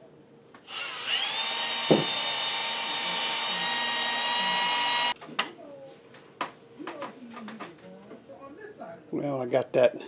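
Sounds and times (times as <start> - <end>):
power tool motor whining: 0.6 - 5.2.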